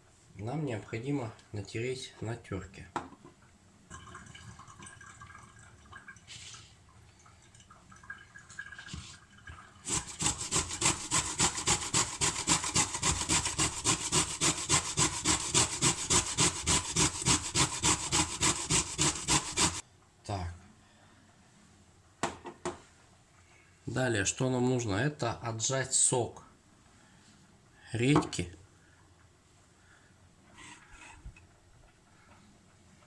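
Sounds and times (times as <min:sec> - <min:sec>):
grating on metal grater: 0:09.9 - 0:19.8.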